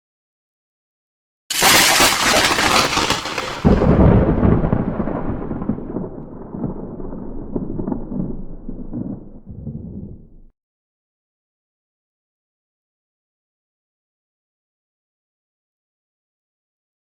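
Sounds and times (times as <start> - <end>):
crackling thunder clap: 1.5 - 10.5
low thunder rumble: 3.6 - 10.5.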